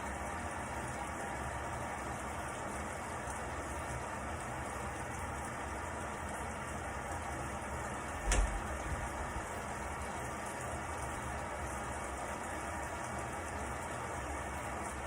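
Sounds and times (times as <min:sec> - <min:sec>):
washing machine motor hum: 0:00.0 - 0:15.0
water churning in drum: 0:00.0 - 0:15.0
short thump: 0:08.2 - 0:08.8.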